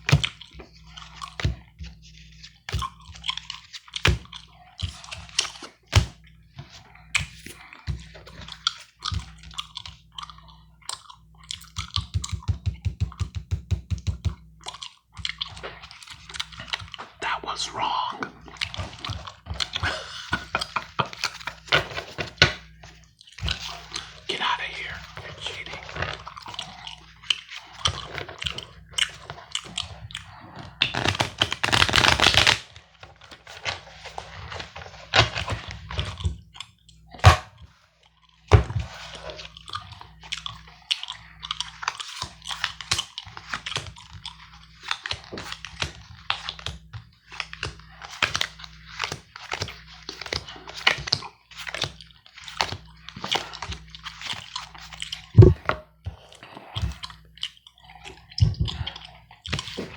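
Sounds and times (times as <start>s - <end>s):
playing cards rustling: 30.9s - 32.6s
gum chewing: 54.5s - 59.9s.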